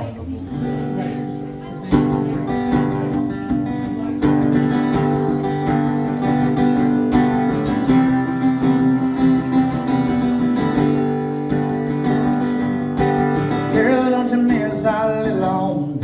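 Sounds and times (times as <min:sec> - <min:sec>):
acoustic guitar strumming chords: 0:00.0 - 0:16.0.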